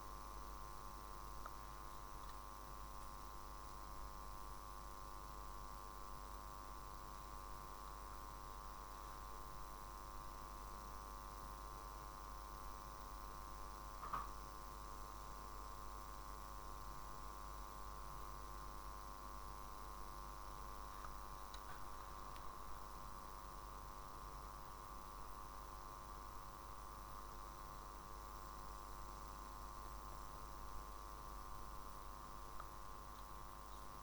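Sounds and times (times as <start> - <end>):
electrical mains hum: 0.0 - 34.0.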